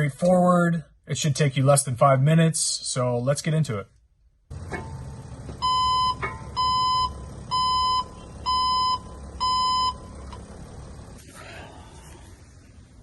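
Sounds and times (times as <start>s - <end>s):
reverse alarm beeping: 5.6s - 10.2s.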